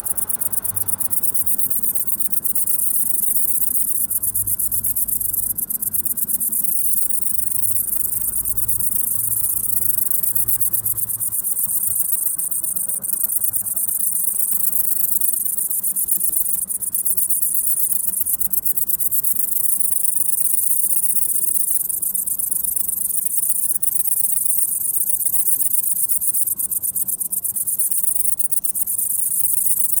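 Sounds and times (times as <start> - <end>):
bush-cricket buzzing song: 0.0 - 30.0.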